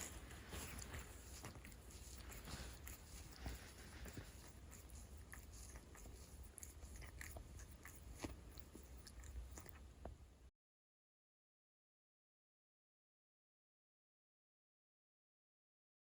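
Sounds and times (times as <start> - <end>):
cat purring: 0.0 - 10.2.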